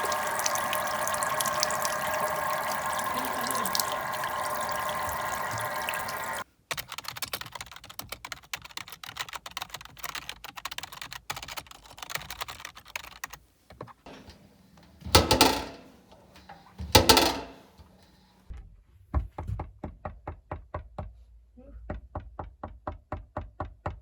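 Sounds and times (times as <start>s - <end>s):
rapid irregular clicking: 0.0s - 18.2s.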